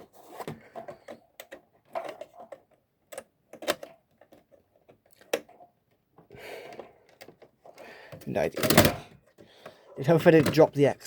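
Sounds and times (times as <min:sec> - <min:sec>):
hard plastic clicks and knocks: 0:08.1 - 0:10.8.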